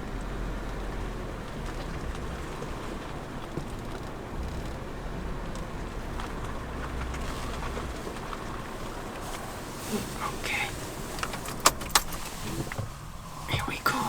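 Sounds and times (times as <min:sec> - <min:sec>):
car interior rumble: 0:00.0 - 0:14.0.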